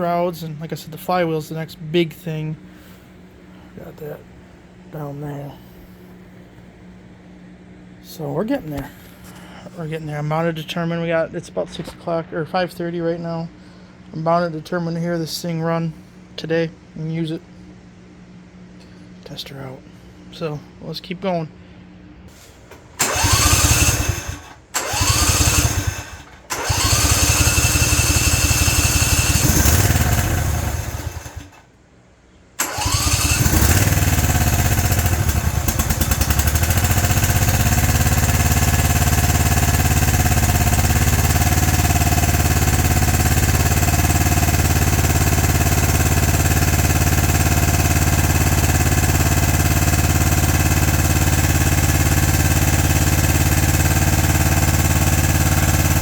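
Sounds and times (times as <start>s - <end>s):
engine running steadily: 21.6s - 31.6s, 32.6s - 56.0s
lawn mower engine starting: 22.3s - 31.7s, 32.6s - 56.0s.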